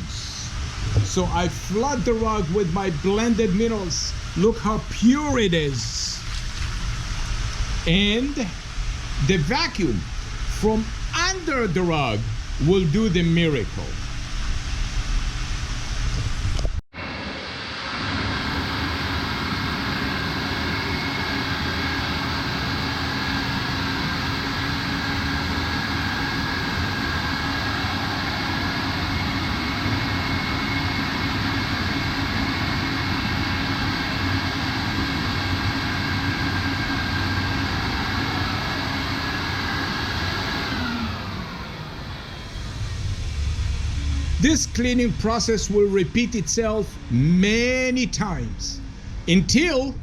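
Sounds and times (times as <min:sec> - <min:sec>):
vacuum motor running: 0:00.1 - 0:11.1, 0:17.8 - 0:45.3.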